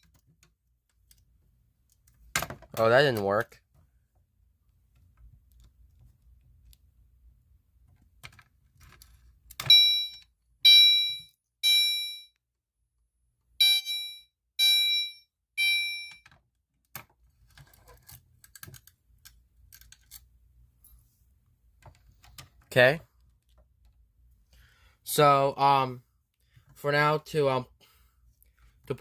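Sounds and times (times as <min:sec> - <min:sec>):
ringing chime tones: 0:09.7 - 0:12.3.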